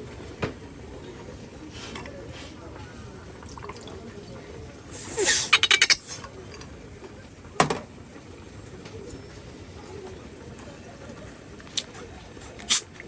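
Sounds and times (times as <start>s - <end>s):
sharp clinks of dishes: 5.5s - 6.0s.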